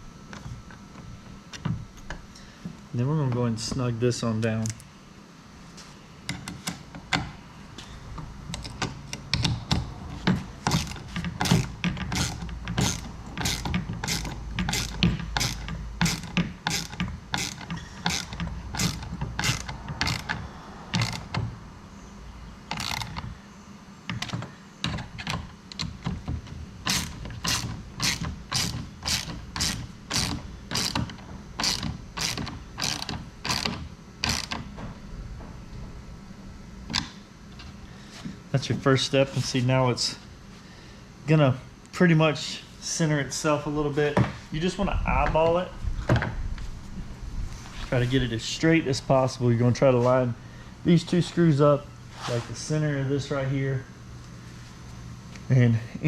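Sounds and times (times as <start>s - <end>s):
ratchet wrench clicking: 10.7s - 21.4s, 22.7s - 23.3s, 26.8s - 34.6s.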